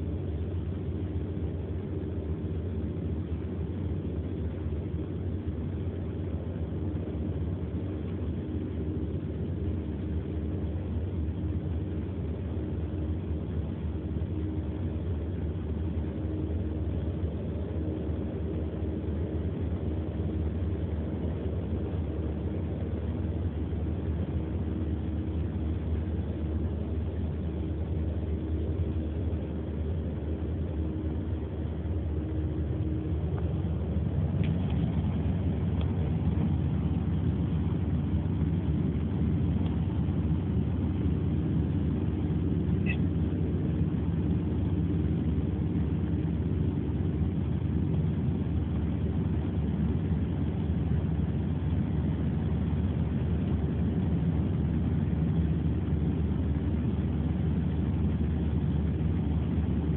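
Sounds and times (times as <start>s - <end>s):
car interior low rumble: 0.0s - 59.9s
faint steady hum: 0.0s - 59.9s.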